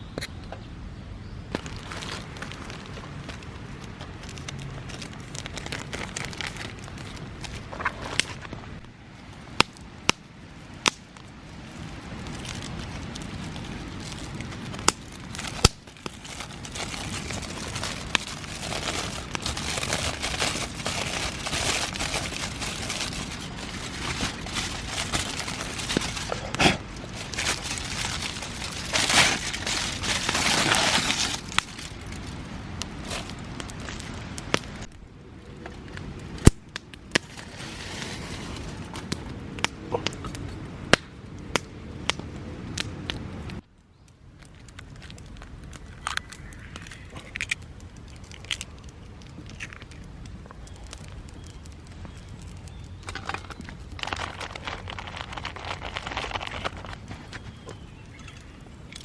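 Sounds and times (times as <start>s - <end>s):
wood fire crackling and popping: 1.5s - 59.0s
rustling handling noise: 12.3s - 32.4s, 53.0s - 59.0s.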